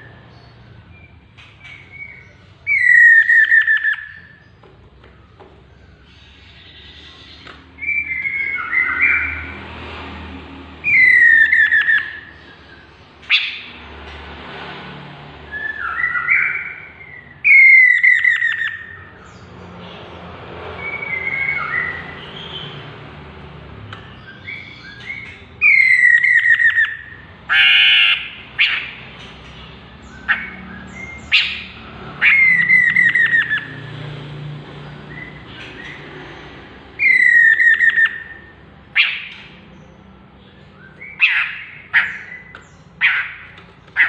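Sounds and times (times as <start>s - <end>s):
bird singing whistled phrases: 1.0s - 4.4s, 15.5s - 19.1s.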